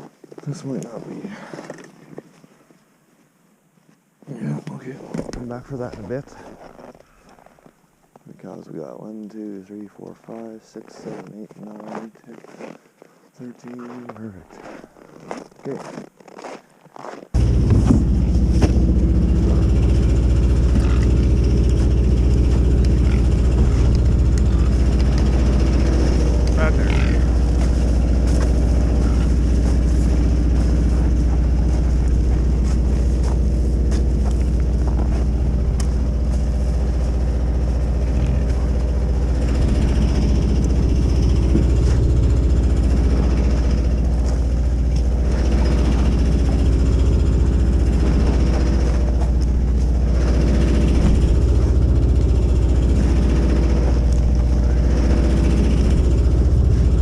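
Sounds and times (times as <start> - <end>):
machine humming: 17.4 - 57.0.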